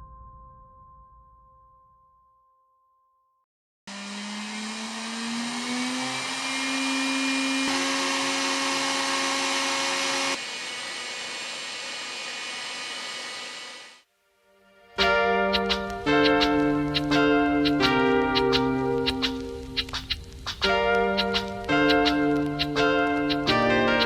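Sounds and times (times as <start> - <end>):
turbocharger whine: 3.9 - 14.0.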